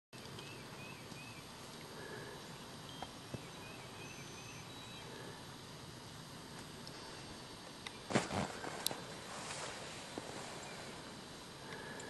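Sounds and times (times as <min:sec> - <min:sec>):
faint clicks: 0:00.2 - 0:03.4, 0:06.5 - 0:07.0, 0:11.6 - 0:12.0
faint bird chirps: 0:00.2 - 0:05.4
faint steady hiss: 0:00.2 - 0:12.0.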